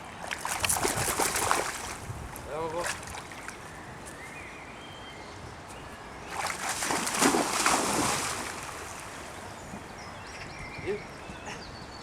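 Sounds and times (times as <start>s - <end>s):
water splashing: 6.3s - 9.2s
river water rushing: 6.4s - 9.4s.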